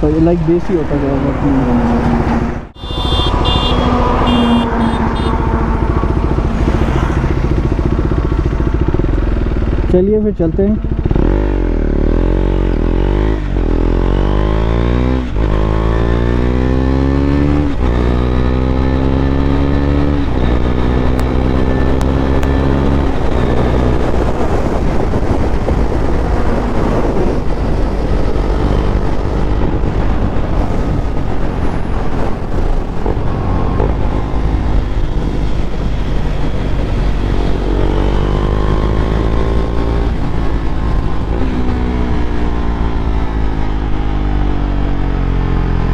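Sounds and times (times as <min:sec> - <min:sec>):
motorcycle engine accelerating: 0:01.6 - 0:45.9.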